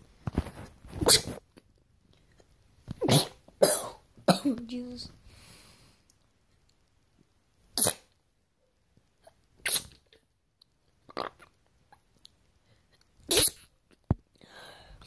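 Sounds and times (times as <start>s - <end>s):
person sneezing: 3.0s - 4.6s, 7.8s - 8.1s, 9.6s - 10.0s, 13.3s - 13.7s.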